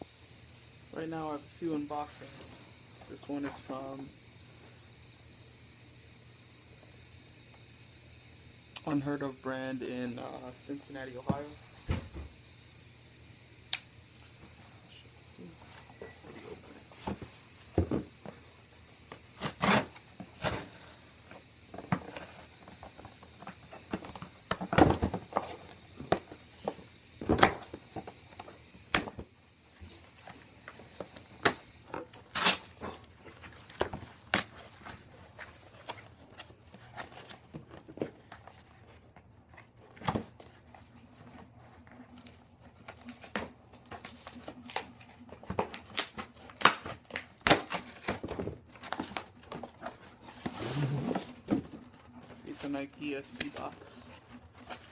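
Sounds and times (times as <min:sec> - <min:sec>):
packaging tearing and rustling: 0:30.0 - 0:52.6.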